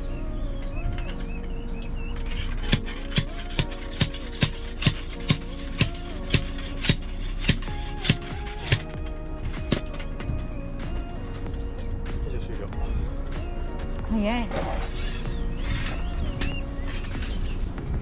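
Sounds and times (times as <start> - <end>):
background music: 0.0 - 18.0
tool striking wood: 2.6 - 8.9.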